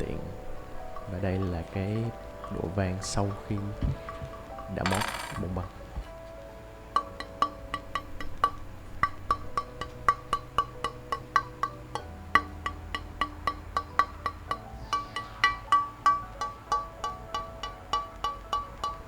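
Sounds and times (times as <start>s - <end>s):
wood-block clicks: 4.9s - 5.5s.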